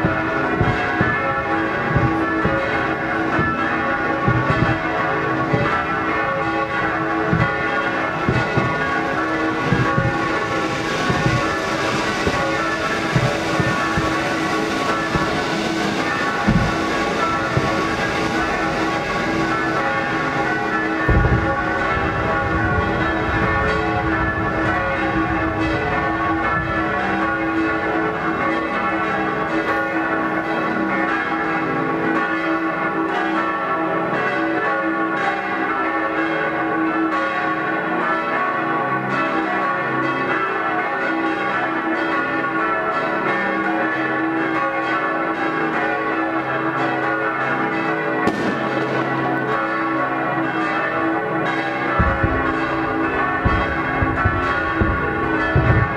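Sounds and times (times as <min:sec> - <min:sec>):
firework bang: 0:00.0 - 0:29.9, 0:48.2 - 0:49.1, 0:51.8 - 0:55.9
church bells pealing: 0:00.0 - 0:55.9.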